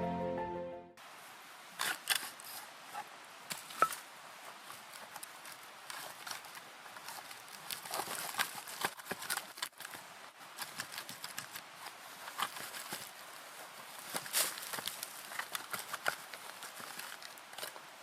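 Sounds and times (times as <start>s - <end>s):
background music: 0.0s - 1.0s
faint steady hiss: 0.0s - 18.0s.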